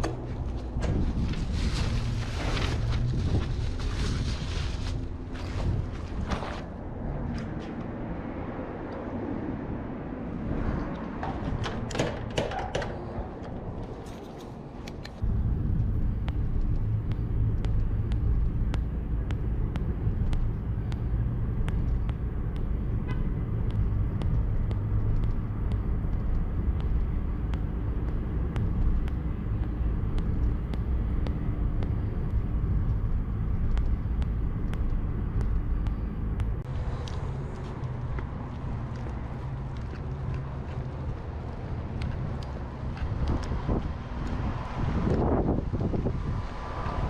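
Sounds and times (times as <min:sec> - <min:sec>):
road and engine rumble: 0:00.0 - 0:47.0
faint regular ticking: 0:15.1 - 0:40.4.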